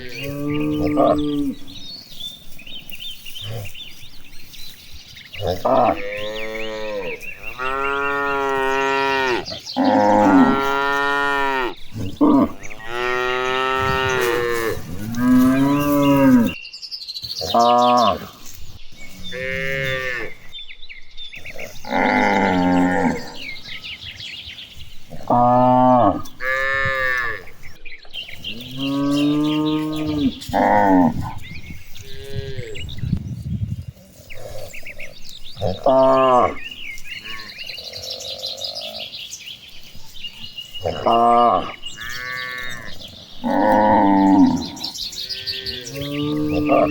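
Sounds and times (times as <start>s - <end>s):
cattle mooing: 0.0s - 1.8s, 5.4s - 16.6s, 21.8s - 23.6s, 40.8s - 46.9s.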